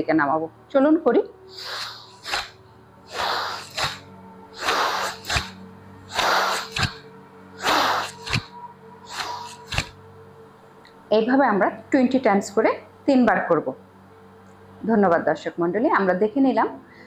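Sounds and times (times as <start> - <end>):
forceful noisy breathing: 1.5 - 10.0.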